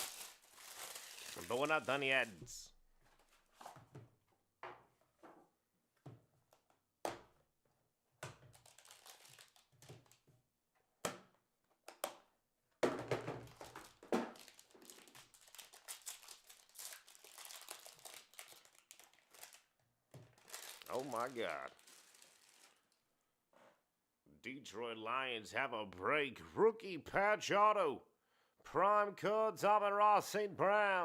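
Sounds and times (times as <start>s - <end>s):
plastic wrapper tearing and crinkling: 0.0s - 2.4s, 8.5s - 10.2s, 13.7s - 23.0s.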